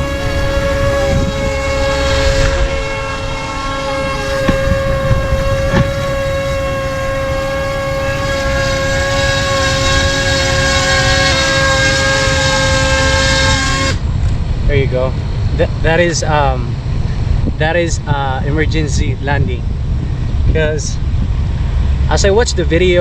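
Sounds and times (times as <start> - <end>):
drone propellers whining: 0.0 - 17.6
rushing air rumble: 0.0 - 23.0.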